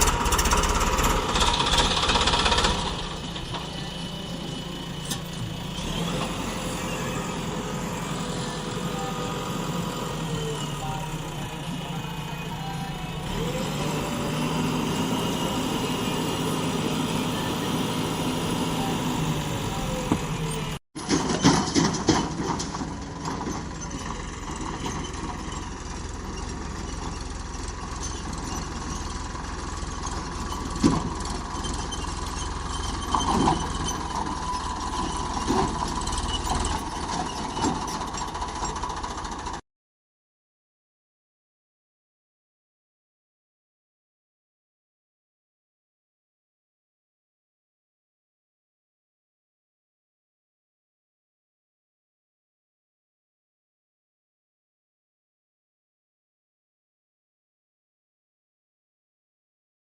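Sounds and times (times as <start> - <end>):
diesel engine running: 0.0 - 39.6
sharp metallic knocks and clanks: 21.0 - 25.5.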